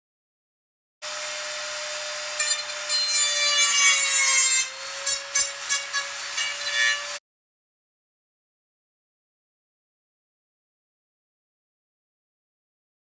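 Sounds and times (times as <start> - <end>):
harsh cutting scrape: 1.0 - 7.2
power tool motor whine: 1.0 - 7.2.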